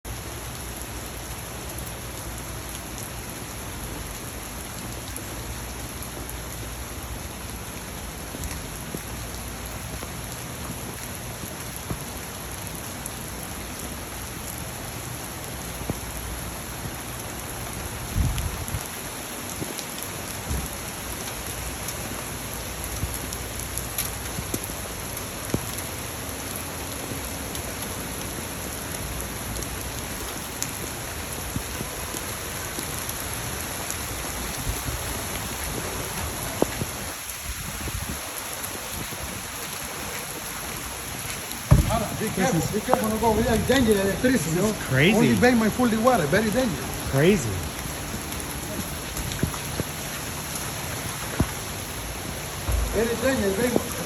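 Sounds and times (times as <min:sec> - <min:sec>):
rain falling: 0:00.0 - 0:54.0
low thump: 0:41.7 - 0:42.3, 0:52.6 - 0:53.0
sharp drop impacts: 0:41.7 - 0:42.6.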